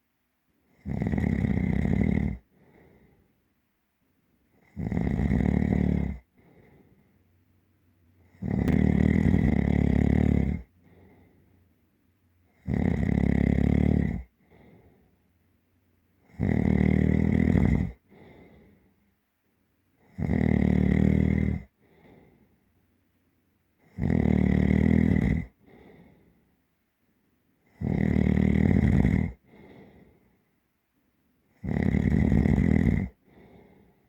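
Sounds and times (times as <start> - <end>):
loud rattling snore: 0.8 - 2.4, 4.6 - 6.3, 8.3 - 10.7, 12.6 - 14.3, 16.3 - 18.0, 20.1 - 21.7, 23.9 - 25.6, 27.7 - 29.4, 31.6 - 33.2
faint breath out: 2.5 - 3.4, 6.3 - 7.2, 10.8 - 11.7, 14.4 - 15.3, 18.0 - 19.1, 21.7 - 22.7, 25.6 - 26.6, 29.4 - 30.5, 33.2 - 34.0.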